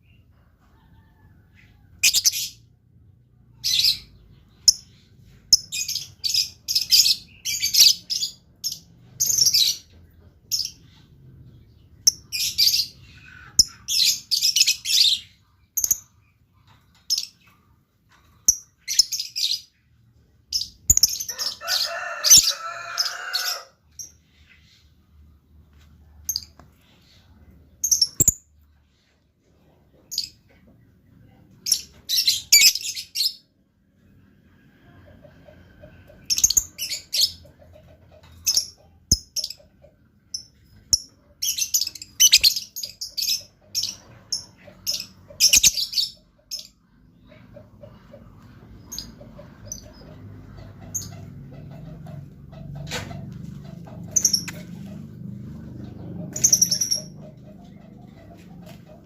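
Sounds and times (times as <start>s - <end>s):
lovebirds chirping: 2.0s - 2.7s, 3.5s - 25.0s, 25.7s - 29.1s, 31.6s - 33.5s, 38.2s - 52.2s, 52.8s - 57.8s.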